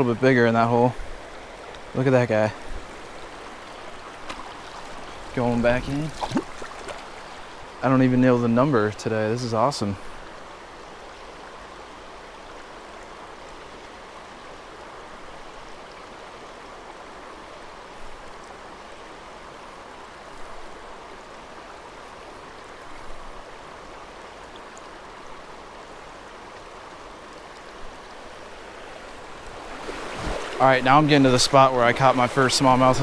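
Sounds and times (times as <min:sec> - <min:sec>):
water rushing over rocks: 0:00.0 - 0:10.7, 0:19.2 - 0:33.0.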